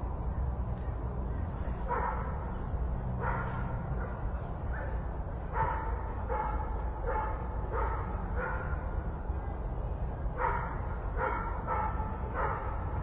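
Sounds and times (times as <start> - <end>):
low city rumble: 0.0 - 13.0
dog barking: 1.9 - 2.4, 3.2 - 8.9, 10.4 - 13.0.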